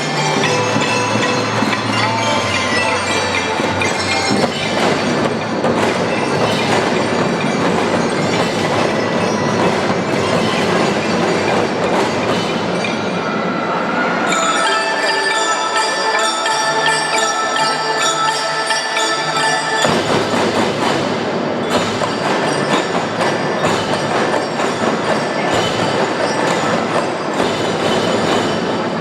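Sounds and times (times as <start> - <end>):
bell-lyra and mallet notes: 0.0 - 11.8, 14.2 - 29.0
marching band drums and cymbals: 0.0 - 13.2, 19.4 - 29.0.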